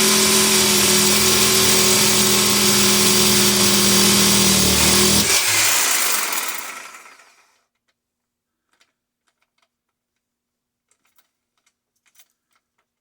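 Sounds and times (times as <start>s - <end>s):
power tool winding down: 0.0s - 7.5s.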